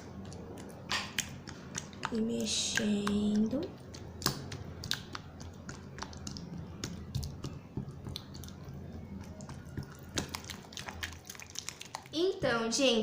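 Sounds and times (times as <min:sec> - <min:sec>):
spoon stirring thick mixture: 0:00.0 - 0:12.5.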